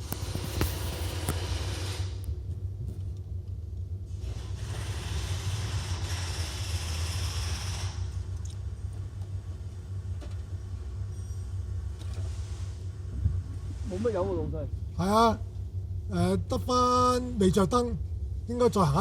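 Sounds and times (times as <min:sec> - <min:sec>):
low vehicle rumble: 0:00.0 - 0:19.0.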